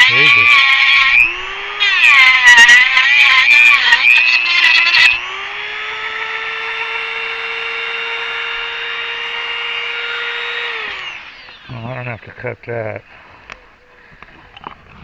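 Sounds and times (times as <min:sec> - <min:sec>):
metal screeching: 0:00.0 - 0:05.6
power tool cutting metal: 0:00.0 - 0:12.3.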